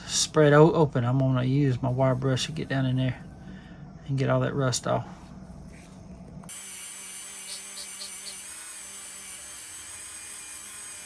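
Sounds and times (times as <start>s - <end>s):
motorized wire brush wheel: 6.5s - 11.0s.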